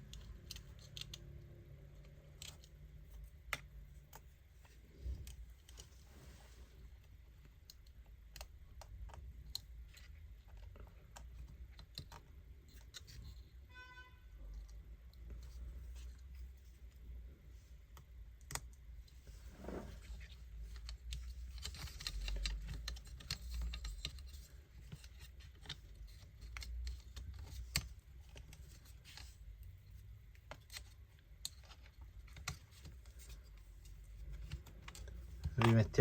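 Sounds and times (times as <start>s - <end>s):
small tools clicking and tapping: 7.4s - 13.4s, 20.7s - 29.3s.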